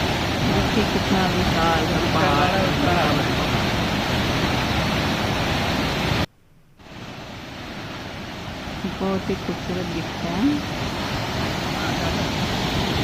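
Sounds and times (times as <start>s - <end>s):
waterfall roaring: 0.0s - 13.0s.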